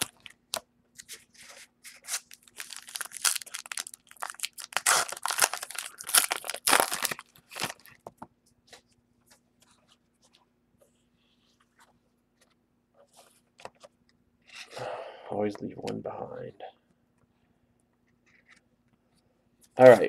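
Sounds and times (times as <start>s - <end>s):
plastic packaging crinkling: 1.8s - 8.1s.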